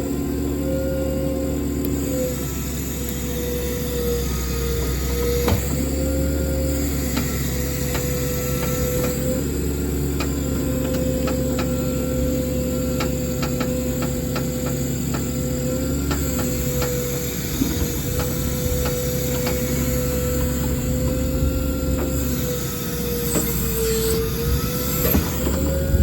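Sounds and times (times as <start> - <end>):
hydraulic pump whining: 0.0 - 26.0
truck engine running: 0.0 - 26.0
sharp clicks and creaks: 16.0 - 21.2.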